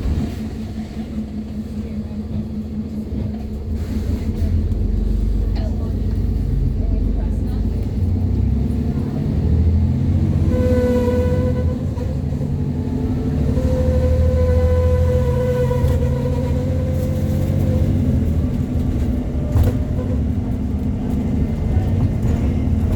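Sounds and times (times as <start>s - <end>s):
bus engine pulling uphill: 0.0s - 22.9s.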